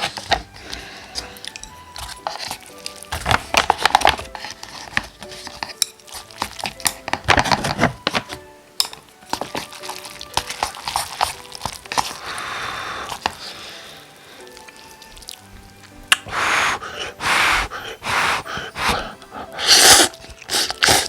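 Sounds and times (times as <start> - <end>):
utensils clinking against dishes: 0.0 - 12.2
background music: 0.0 - 21.0
short hiss: 16.1 - 21.0.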